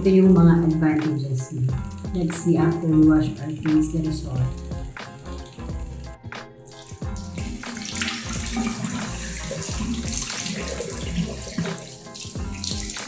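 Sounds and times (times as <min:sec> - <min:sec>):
tap water running into sink: 0:00.1 - 0:06.1, 0:06.7 - 0:13.0
face rinsing splashes: 0:04.4 - 0:13.0.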